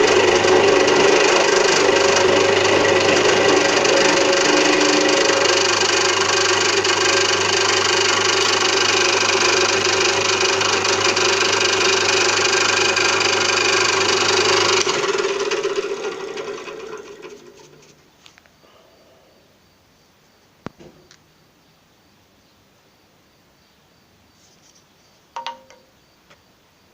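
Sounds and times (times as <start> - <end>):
milling machine motor winding down: 0.0 - 17.9.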